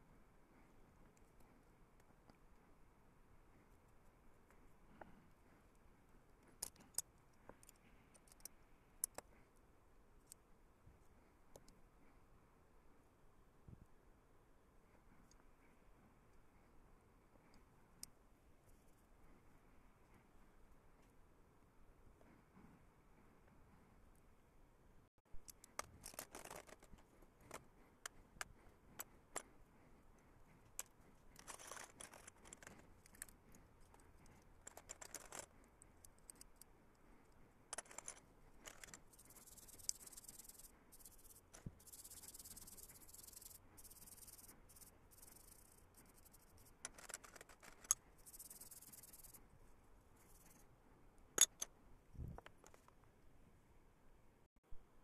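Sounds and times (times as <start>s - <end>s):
small metal parts clicking: 6.6s - 9.3s, 25.4s - 29.5s, 30.6s - 49.4s.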